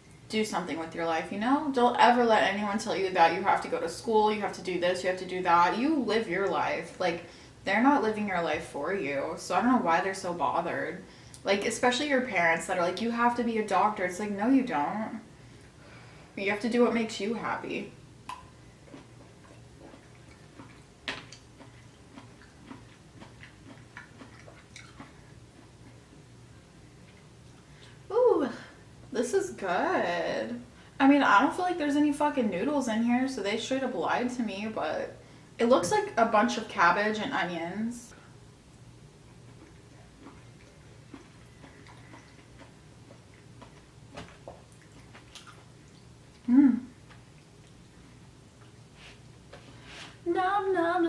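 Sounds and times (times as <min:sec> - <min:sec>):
mouth clicks while chewing: 0:18.3 - 0:26.0, 0:39.4 - 0:47.9.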